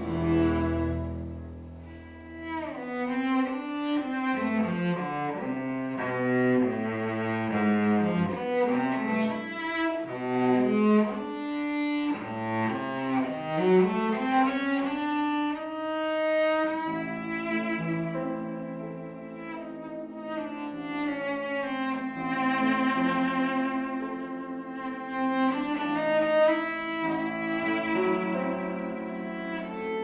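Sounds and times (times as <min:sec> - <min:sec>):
string ensemble playing: 0:00.0 - 0:30.0.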